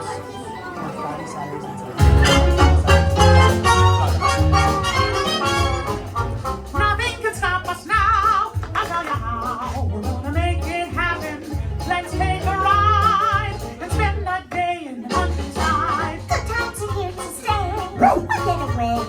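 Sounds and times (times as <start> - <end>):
pulsing bass line: 2.0 - 14.3
upbeat music with singing: 2.0 - 19.0.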